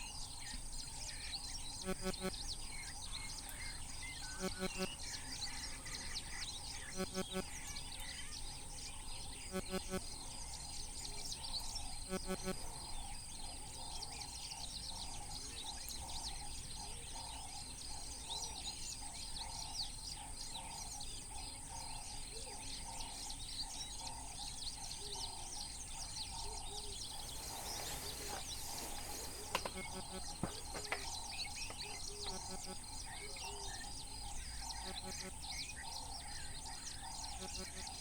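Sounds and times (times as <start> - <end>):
low pulsing insect drone: 0.0 - 38.0
small birds chirping: 0.0 - 38.0
high insect whine: 27.0 - 35.6.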